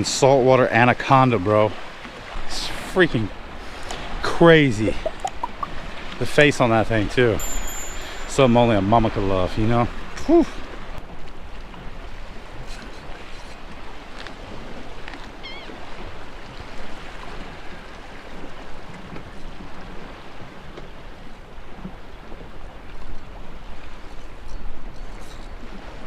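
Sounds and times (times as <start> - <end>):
surf washing against jetty: 0.0 - 26.0.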